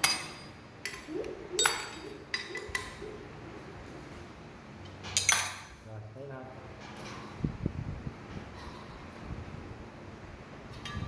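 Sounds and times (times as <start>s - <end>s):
metal sockets clinking: 5.0s - 5.8s.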